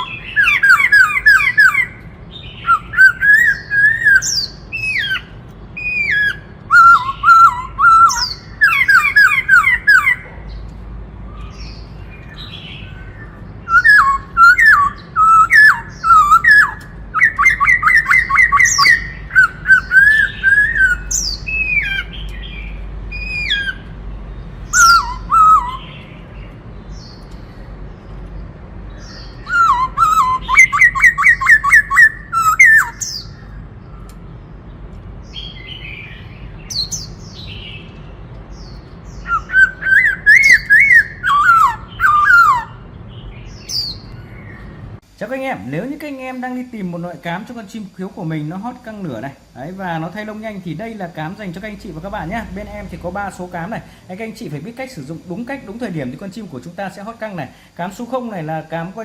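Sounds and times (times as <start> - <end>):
bird singing whistled phrases: 0.0 - 10.3, 11.3 - 23.9, 24.7 - 26.3, 29.0 - 34.1, 39.1 - 42.8.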